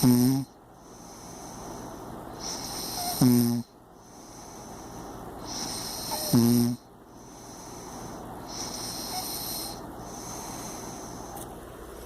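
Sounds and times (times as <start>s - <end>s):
person snoring: 0.0s - 1.4s, 2.4s - 3.7s, 5.4s - 6.9s, 8.5s - 11.3s.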